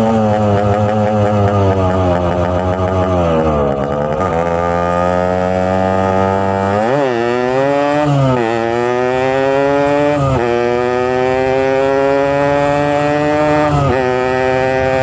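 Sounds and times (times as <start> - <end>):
motorcycle throttle blips: 0.0 - 8.8
two-stroke motorcycle engine running: 0.0 - 15.0.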